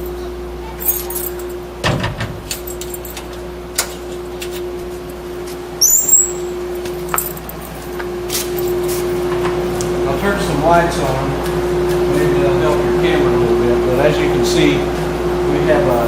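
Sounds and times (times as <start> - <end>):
steady hum: 0.0 - 16.0
keys rattling: 0.8 - 1.6, 2.4 - 3.4, 5.8 - 9.8
door squeak: 5.8 - 6.6.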